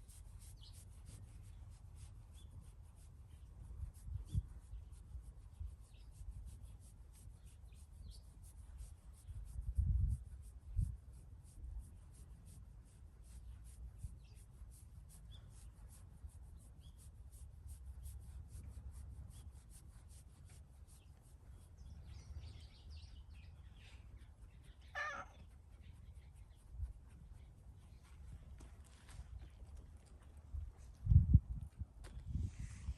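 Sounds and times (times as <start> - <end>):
hands rubbing cat fur: 0.0 - 29.4
faint bird chirps: 21.0 - 28.4
short cat sound: 25.0 - 25.4.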